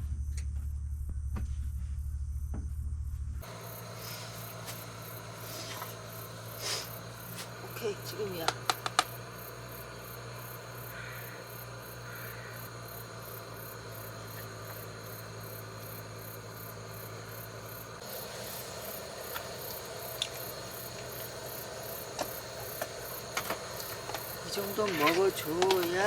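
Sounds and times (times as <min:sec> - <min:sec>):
insects chirping: 0:03.4 - 0:26.0
light clicks: 0:08.5 - 0:09.2.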